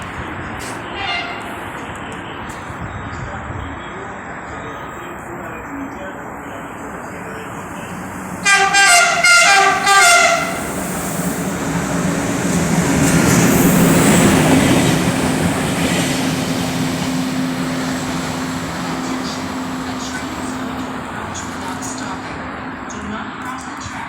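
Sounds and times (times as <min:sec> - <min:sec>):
locomotive passing rumble: 0:00.0 - 0:24.0
locomotive horn blasts: 0:01.0 - 0:01.6, 0:08.4 - 0:10.9.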